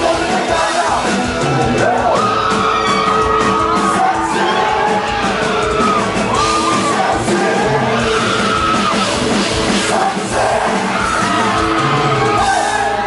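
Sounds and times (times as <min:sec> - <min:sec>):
loud music: 0:00.0 - 0:13.0
voices singing and shouting: 0:00.0 - 0:13.0.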